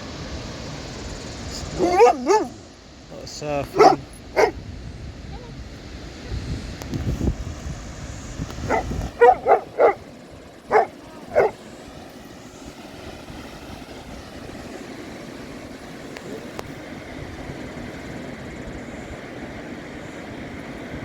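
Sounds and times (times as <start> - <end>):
background hiss: 0.0 - 4.6
dog barking: 1.8 - 2.6, 3.7 - 4.6, 8.6 - 10.1, 10.7 - 11.6.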